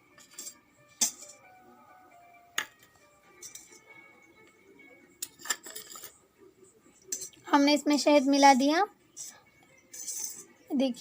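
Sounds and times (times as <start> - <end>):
spoon stirring in bowl: 0.0 - 1.5, 2.8 - 4.5, 5.1 - 10.7
spoon clinking against bowl: 3.3 - 3.9, 9.1 - 10.7.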